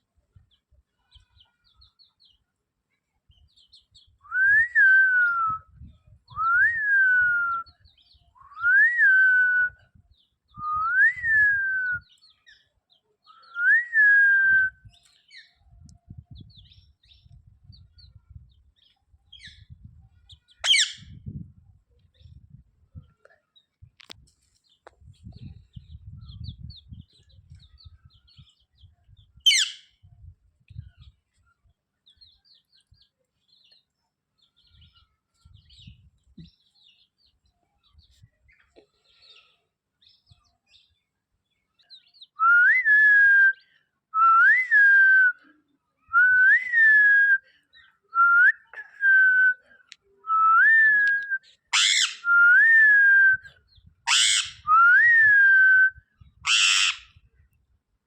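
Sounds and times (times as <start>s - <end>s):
parrot squawk: 20.6s - 21.0s, 29.5s - 29.8s, 51.7s - 52.2s, 54.1s - 54.6s, 56.5s - 57.1s
parrot whistling: 51.8s - 52.3s, 54.1s - 54.7s, 56.5s - 57.0s.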